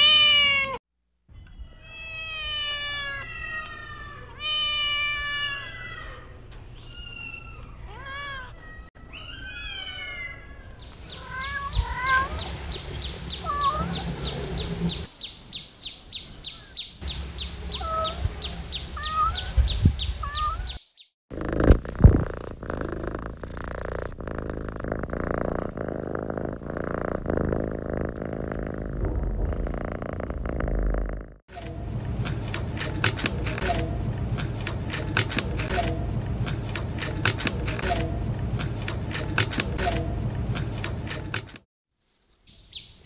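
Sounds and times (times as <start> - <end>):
kittens meowing: 0.0 - 0.8, 1.7 - 12.5.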